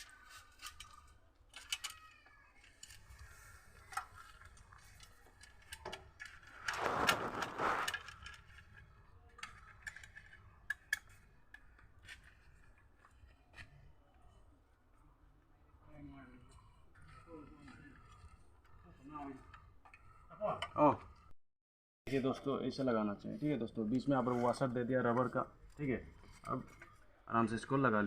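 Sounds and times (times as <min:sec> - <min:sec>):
small metallic clicks and clinks: 0:00.0 - 0:06.5, 0:08.2 - 0:13.6
scraping rustling noise: 0:02.6 - 0:08.8, 0:22.1 - 0:27.2.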